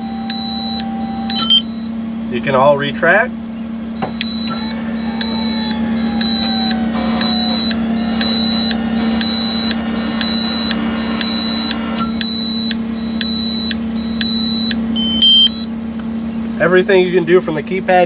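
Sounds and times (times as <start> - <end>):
high-pitched warning beeps: 0.0 - 2.0, 4.0 - 15.7
steady low hum: 0.0 - 16.8.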